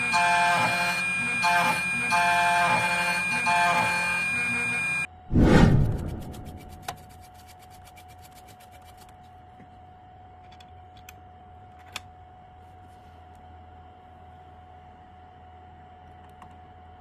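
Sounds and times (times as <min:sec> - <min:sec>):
key cutting machine humming: 0:00.0 - 0:05.1.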